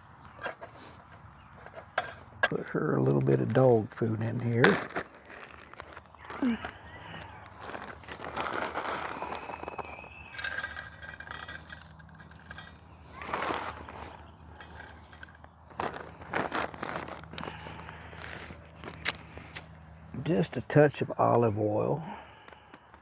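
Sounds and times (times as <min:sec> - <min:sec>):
dog food poured into a bowl: 0:10.3 - 0:17.1.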